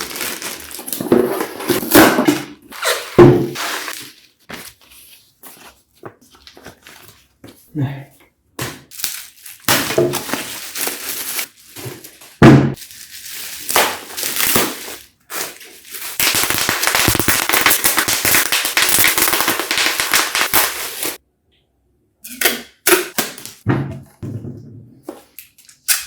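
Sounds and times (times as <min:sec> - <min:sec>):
packaging crackling and rustling: 0:00.0 - 0:02.0, 0:08.9 - 0:21.2.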